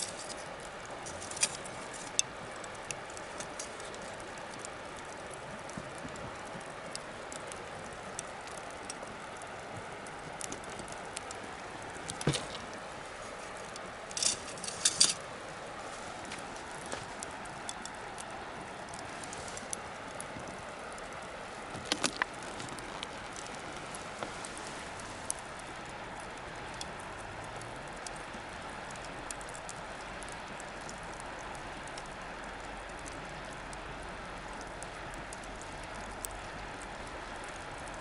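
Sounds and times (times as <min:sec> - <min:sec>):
bonfire hissing and crackling: 0:00.0 - 0:38.0.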